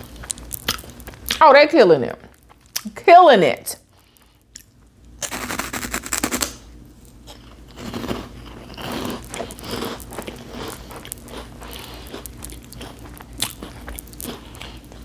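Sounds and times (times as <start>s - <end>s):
crunchy snack chewing: 4.6s - 15.0s.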